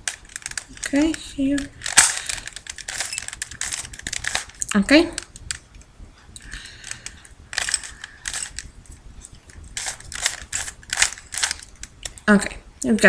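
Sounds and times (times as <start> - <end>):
puzzle cube layers clicking: 9.8 - 12.3.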